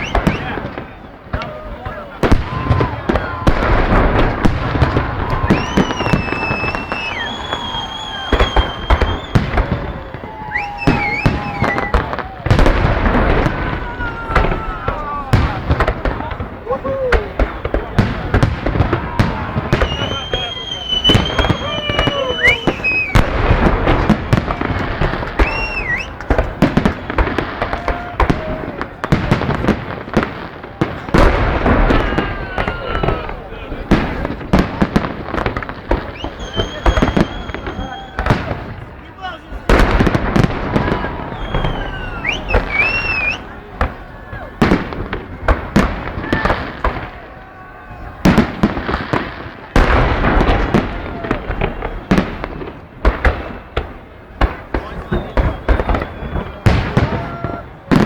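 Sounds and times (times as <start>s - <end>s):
fireworks bangs and crackles: 0.0s - 58.0s
fireworks long high whistles: 0.0s - 58.0s.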